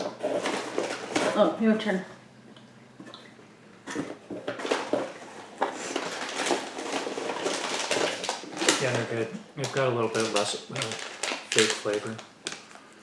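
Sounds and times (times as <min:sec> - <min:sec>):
candy wrapper crinkling: 0:05.8 - 0:13.0.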